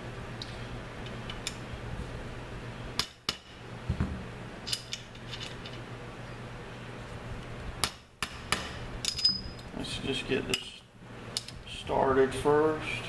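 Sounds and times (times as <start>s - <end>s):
metal tools clinking: 4.6s - 5.8s, 9.0s - 9.7s.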